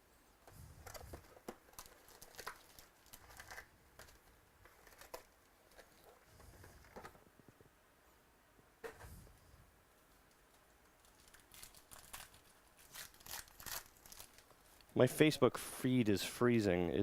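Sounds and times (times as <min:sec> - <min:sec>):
card packs crinkling and tearing: 0:00.8 - 0:06.2, 0:11.0 - 0:14.9.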